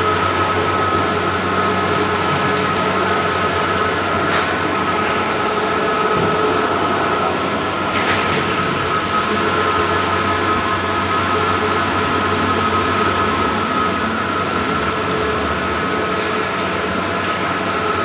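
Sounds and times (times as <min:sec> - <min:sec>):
printer humming and whining: 0:00.0 - 0:18.0.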